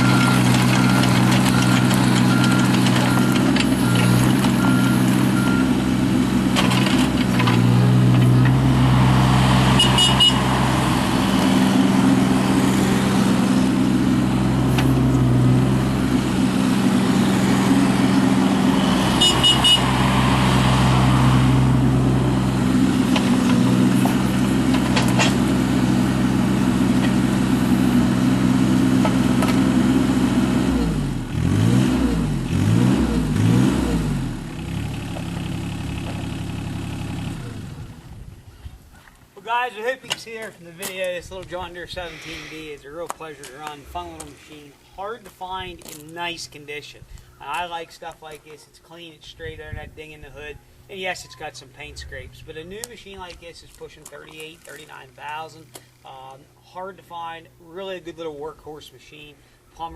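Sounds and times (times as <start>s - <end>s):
excavator diesel engine running: 0.0s - 31.8s, 32.4s - 38.2s.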